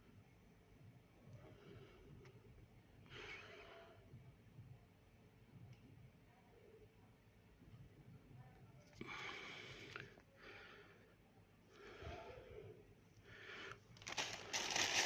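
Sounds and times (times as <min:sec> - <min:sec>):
plastic packaging crinkling: 0:14.0 - 0:15.0
soft rustles: 0:14.0 - 0:15.0.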